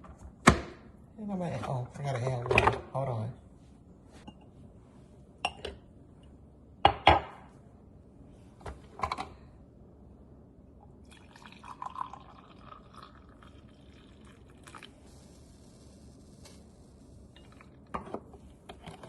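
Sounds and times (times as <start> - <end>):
water pouring: 11.0 - 15.6.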